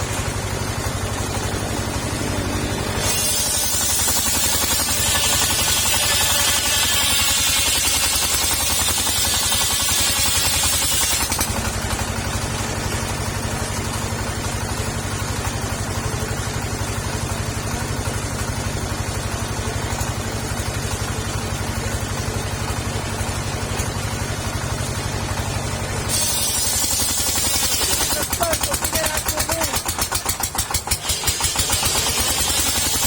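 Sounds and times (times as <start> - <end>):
engine-driven circular saw running: 0.0 - 33.0
loud high hiss: 26.1 - 28.2.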